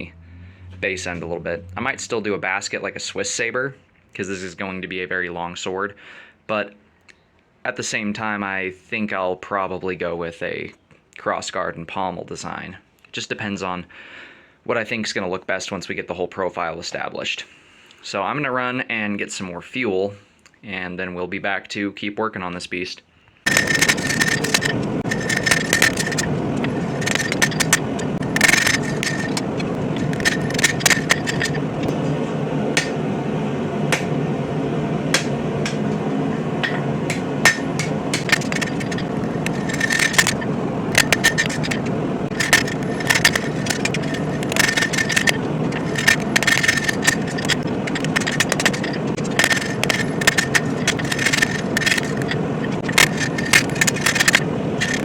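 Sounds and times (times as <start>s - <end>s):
steady rushing noise: 23.5s - 55.0s
hammer striking steel on anvil: 32.8s - 33.0s, 33.9s - 34.2s, 35.1s - 35.9s, 36.6s - 38.4s.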